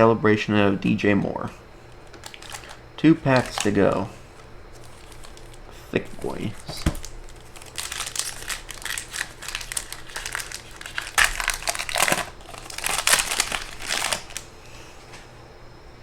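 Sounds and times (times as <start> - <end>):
foil wrapper crinkling: 1.9 - 14.5.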